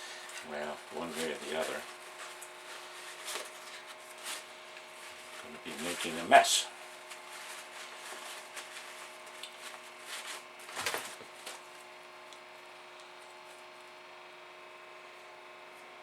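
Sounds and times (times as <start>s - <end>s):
hands rubbing and handling materials: 0.0s - 11.6s
faint steady hum: 0.0s - 16.0s
scuff: 0.2s - 11.7s.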